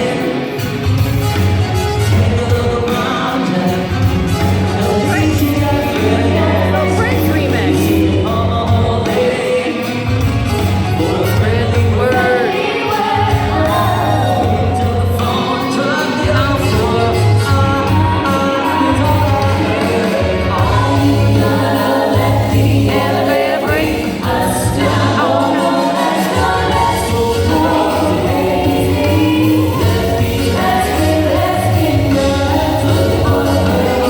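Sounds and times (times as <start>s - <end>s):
music with singing voice: 0.0s - 34.0s
sustained bass notes: 4.1s - 9.0s, 10.3s - 12.5s.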